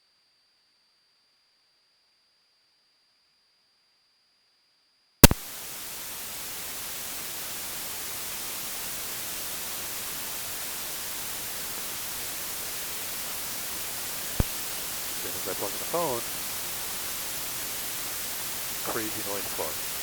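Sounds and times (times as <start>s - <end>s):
single click: 5.2s - 5.4s
static hiss: 5.2s - 20.0s.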